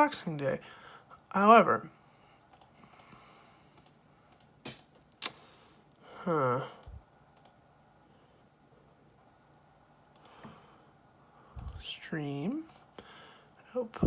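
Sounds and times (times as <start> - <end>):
sharp clicks: 2.4 - 3.2, 6.7 - 7.6.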